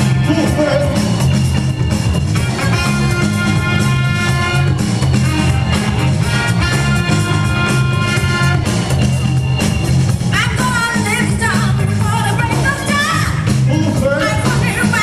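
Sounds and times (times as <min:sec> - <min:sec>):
breakbeat music over loudspeakers: 0:00.0 - 0:15.0
gliding vocal or horn line: 0:02.4 - 0:08.9.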